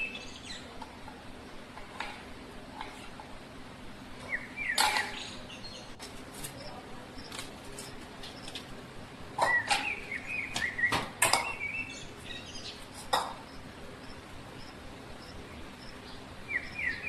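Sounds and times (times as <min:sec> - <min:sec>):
bird chirps: 0:00.0 - 0:00.7, 0:04.2 - 0:06.0, 0:09.4 - 0:12.8, 0:13.5 - 0:17.0
steady background noise: 0:00.0 - 0:17.0.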